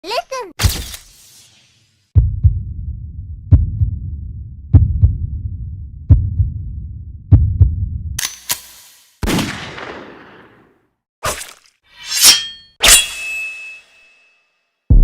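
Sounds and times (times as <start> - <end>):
heartbeat thumps: 2.2 - 8.2.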